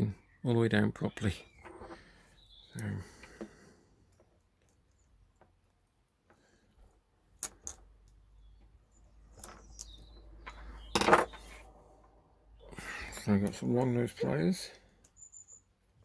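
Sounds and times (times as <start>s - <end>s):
plastic connectors clicking: 7.3s - 8.3s.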